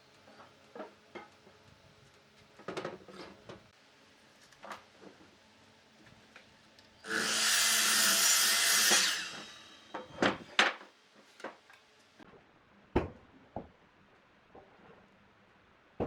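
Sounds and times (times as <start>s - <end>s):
power tool running on wood: 7.1s - 10.0s.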